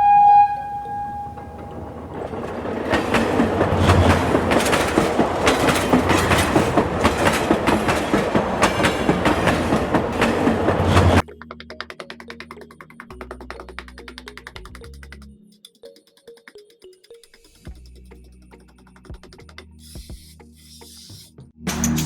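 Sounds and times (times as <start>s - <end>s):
horn-like tone: 0.0s - 2.1s
dense clattering rattle: 1.7s - 11.2s.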